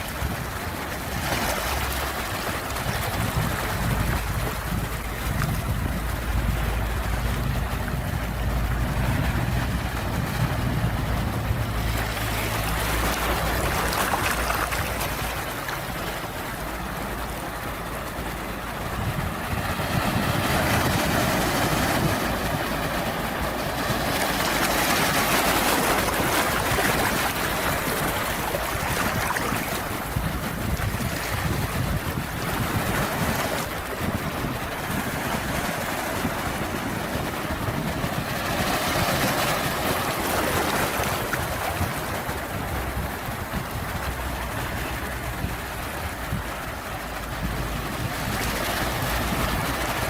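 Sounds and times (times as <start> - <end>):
ocean waves breaking: 0.0 - 50.0
low rumble: 2.9 - 32.9.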